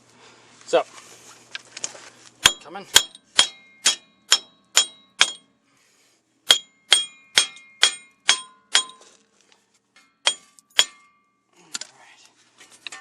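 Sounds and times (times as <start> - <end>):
hammer blows on steel: 2.4 - 5.5.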